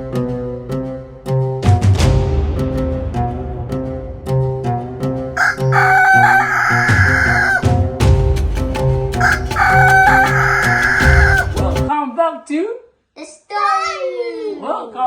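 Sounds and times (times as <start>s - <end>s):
music with bass line: 0.0s - 11.9s
rooster crowing: 5.4s - 7.7s, 9.2s - 11.7s.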